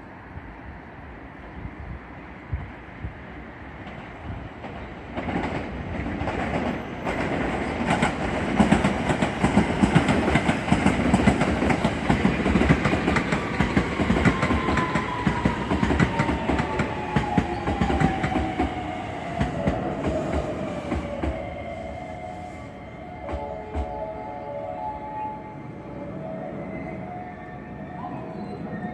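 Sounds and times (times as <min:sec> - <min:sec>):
train wheels clattering over rails: 0:03.8 - 0:21.6.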